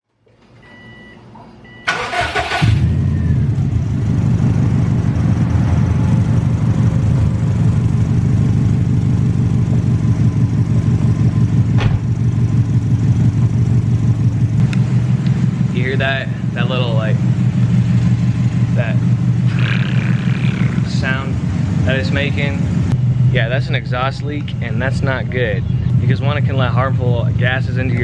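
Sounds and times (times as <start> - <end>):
short beeps: 0.6 - 2.0
engine cranking: 1.9 - 3.0
engine idling: 1.9 - 28.0.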